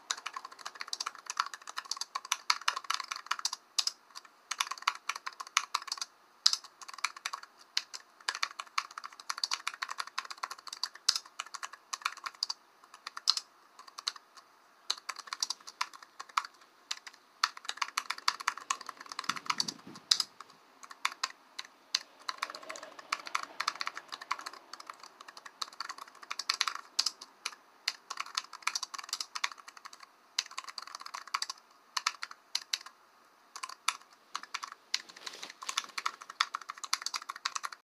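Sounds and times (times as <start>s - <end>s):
keyboard key clicks: 14.9s - 32.9s.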